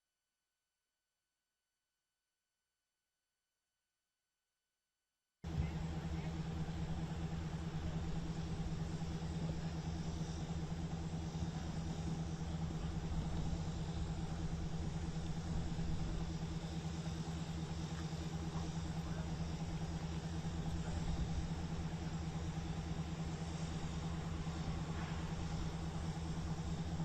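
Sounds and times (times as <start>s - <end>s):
vehicle engine idling: 5.5s - 27.0s.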